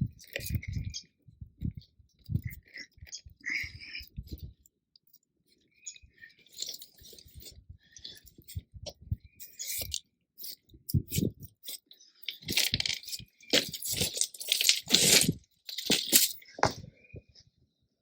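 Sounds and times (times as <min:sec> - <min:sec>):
stone scraping and crunching: 0:09.4 - 0:16.8.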